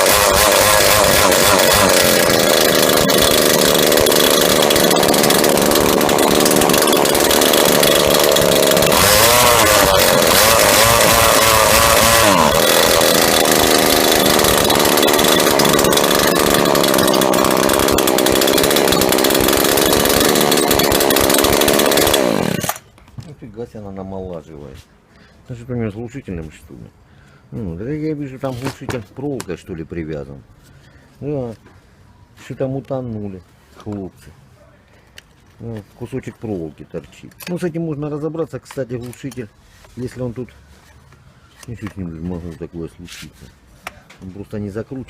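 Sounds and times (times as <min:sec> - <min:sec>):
trimmer engine running: 0:00.0 - 0:22.8.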